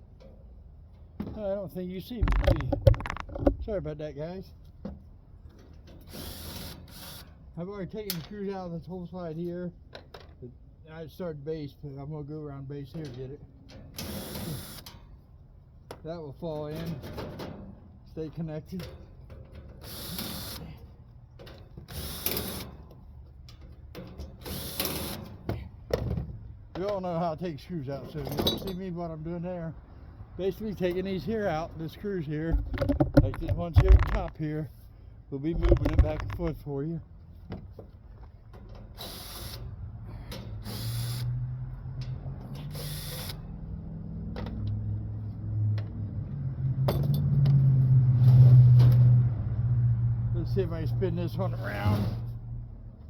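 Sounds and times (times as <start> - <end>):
power screwdriver bursts: 6.0 - 7.3, 14.0 - 14.9, 19.8 - 20.7, 21.9 - 22.8, 24.4 - 25.2, 39.0 - 39.7, 40.6 - 41.3, 42.6 - 43.4.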